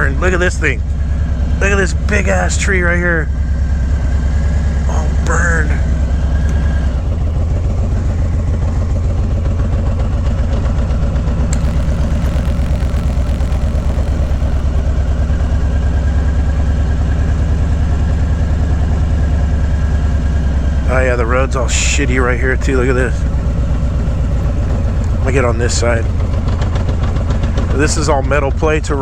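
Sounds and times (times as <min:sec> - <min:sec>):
motorcycle engine idling: 0:00.0 - 0:13.8, 0:14.8 - 0:28.8.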